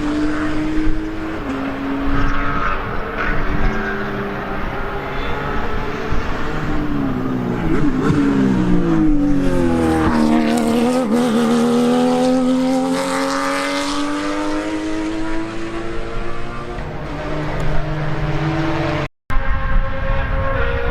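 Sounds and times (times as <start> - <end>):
racing car engine accelerating: 0.0 - 20.9.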